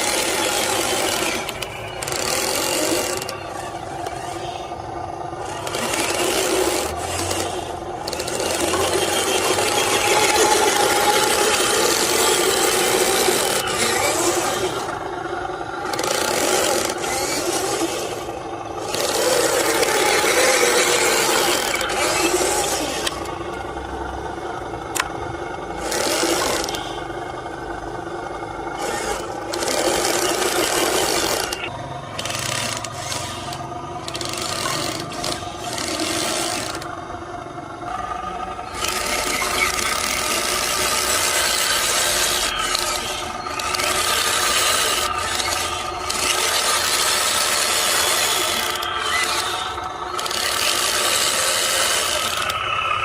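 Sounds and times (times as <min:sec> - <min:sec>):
toy truck motor whirring: 0:00.0 - 0:53.0.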